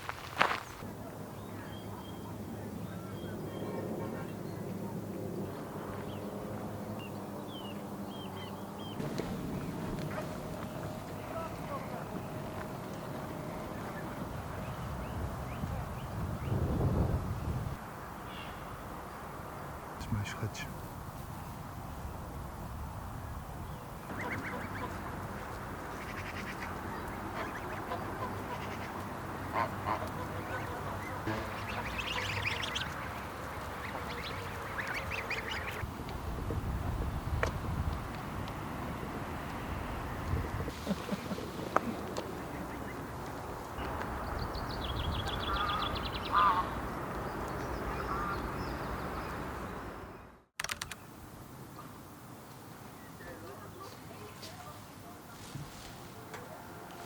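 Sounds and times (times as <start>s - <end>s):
background noise: 0.0s - 57.0s
waterfowl honking calls: 24.1s - 35.8s, 45.5s - 46.8s
clicks: 50.6s - 51.0s.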